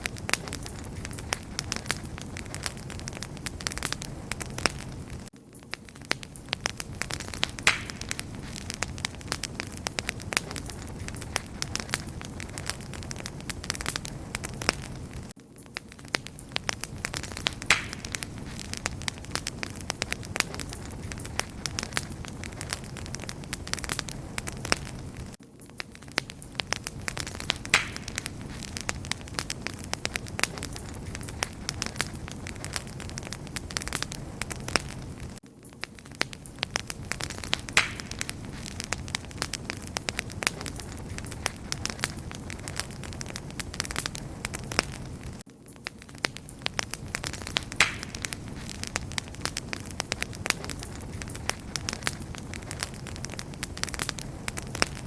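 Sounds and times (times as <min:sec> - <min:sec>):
low rush of flames: 0:00.0 - 0:55.0
wood fire crackling: 0:00.0 - 0:55.0.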